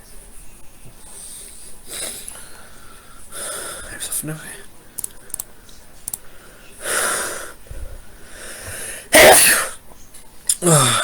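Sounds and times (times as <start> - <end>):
person coughing: 9.1 - 9.8.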